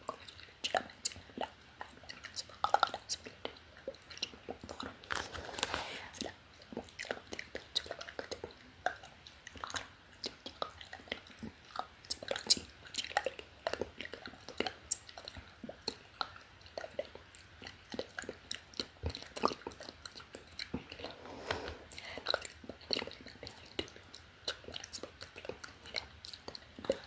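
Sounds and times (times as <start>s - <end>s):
wet mouth clicks and smacks: 6.2s - 21.1s, 22.2s - 27.0s.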